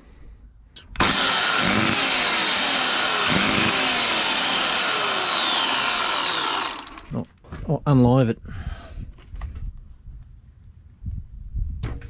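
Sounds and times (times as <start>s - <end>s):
electric chainsaw motor running: 0.9s - 7.2s.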